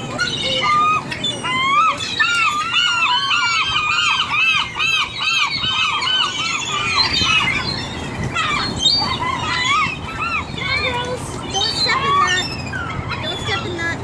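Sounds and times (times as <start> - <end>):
gulls calling: 0.0 - 14.0.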